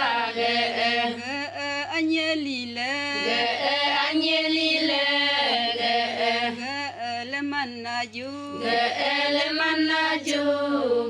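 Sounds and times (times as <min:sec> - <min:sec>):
voices chanting a folk song: 0:00.0 - 0:01.4, 0:03.1 - 0:06.7, 0:08.5 - 0:11.0.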